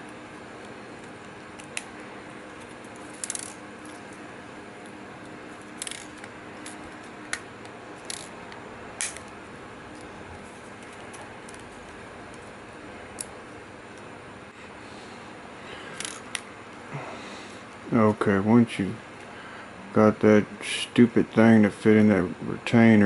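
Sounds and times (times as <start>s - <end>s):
small camera parts clicking: 2.6s - 4.0s, 5.8s - 7.4s, 8.0s - 8.3s.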